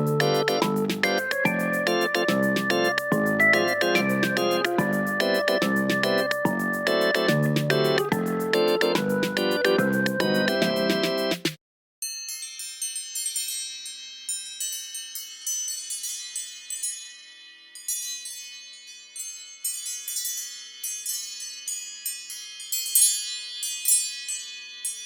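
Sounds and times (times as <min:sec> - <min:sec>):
phone ringtone bell tones: 0:00.2 - 0:08.9.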